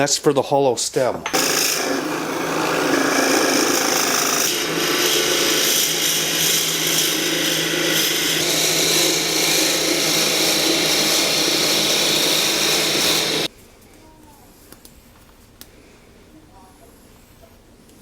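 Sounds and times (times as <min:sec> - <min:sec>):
power drill boring into wood: 0:01.3 - 0:13.5.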